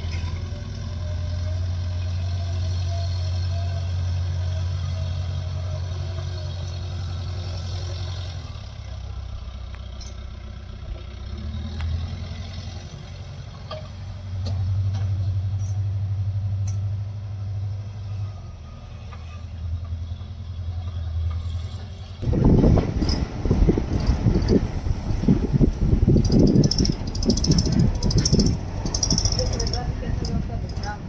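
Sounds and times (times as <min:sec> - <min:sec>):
heavy diesel engine running: 0:00.0 - 0:15.7, 0:18.2 - 0:31.0
light clanks: 0:26.2 - 0:31.0.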